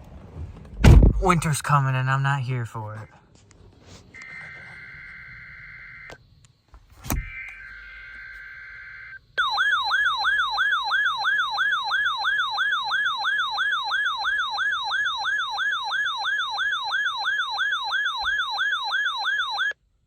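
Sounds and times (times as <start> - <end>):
weather radio warbling alert siren: 4.2 - 6.2, 7.1 - 19.8.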